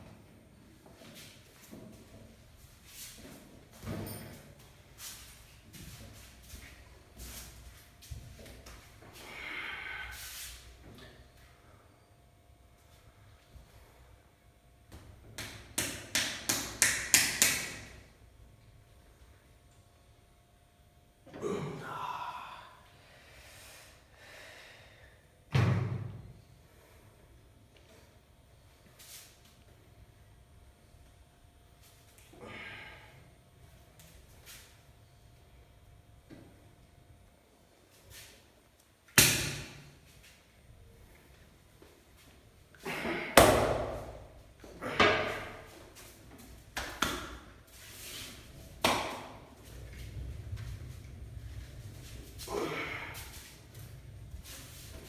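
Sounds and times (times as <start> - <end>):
person gasping and breathing heavily: 9.2 - 10.4, 21.4 - 25.2, 42.8 - 45.7, 52.4 - 53.5
hands slapping body: 14.9 - 18.0, 39.2 - 39.9, 46.8 - 47.5, 48.8 - 49.4.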